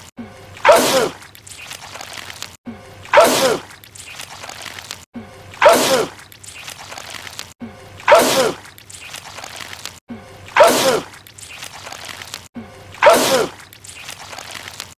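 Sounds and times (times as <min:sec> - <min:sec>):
man sneezing: 0:08.1 - 0:08.6, 0:10.6 - 0:11.1.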